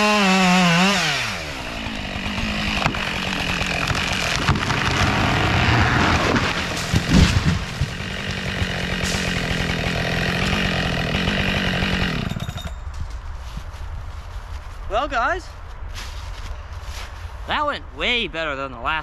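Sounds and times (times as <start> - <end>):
chainsaw running: 0.0 - 12.9
tree falling thud: 2.6 - 10.6.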